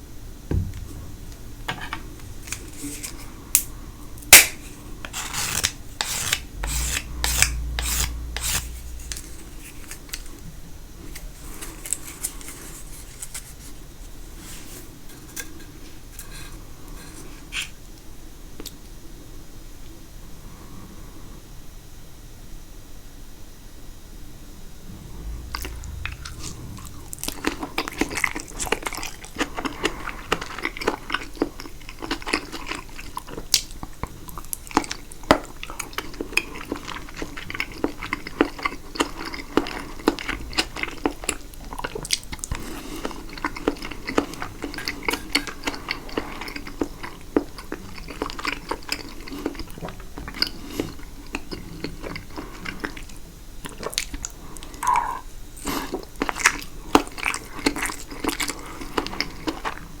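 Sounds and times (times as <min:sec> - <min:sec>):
wet chewing: 0:25.2 - 1:00.0.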